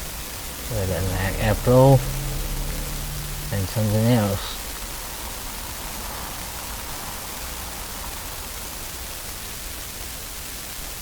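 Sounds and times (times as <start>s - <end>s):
faint low hum: 0.0s - 8.4s
background hiss: 0.0s - 11.0s.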